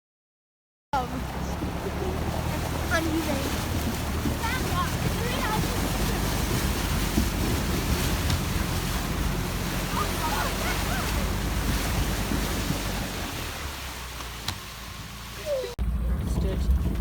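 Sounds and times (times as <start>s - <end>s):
wind buffeting microphone: 1.0s - 17.0s.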